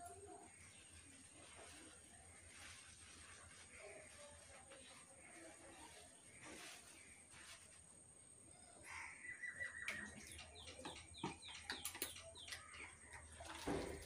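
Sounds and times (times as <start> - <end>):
bird whistling and chirping: 9.2 - 10.2.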